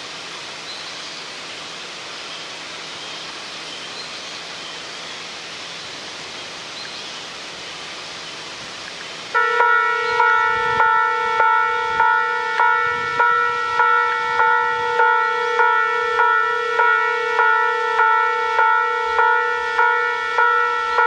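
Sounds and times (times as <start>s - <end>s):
steady outdoor hiss: 0.0s - 21.0s
level crossing warning bell ringing: 9.4s - 21.0s.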